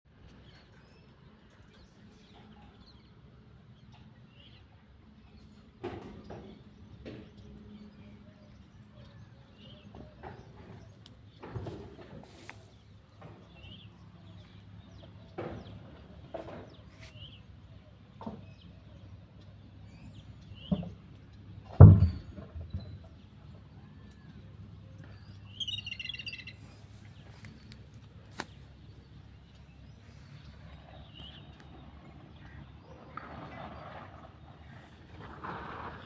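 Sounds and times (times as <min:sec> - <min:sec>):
small birds chirping: 0:00.4 - 0:21.6, 0:22.7 - 0:35.3
loud dull thump: 0:21.7 - 0:22.9.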